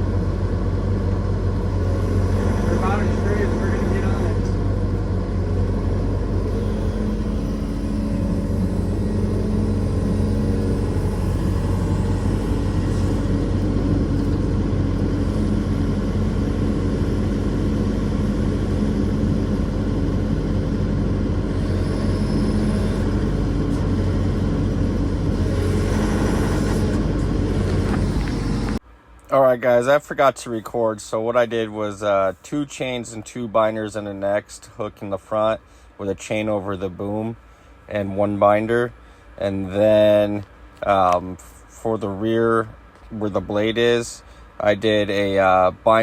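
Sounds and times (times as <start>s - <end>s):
heavy diesel engine running: 0.0s - 28.8s.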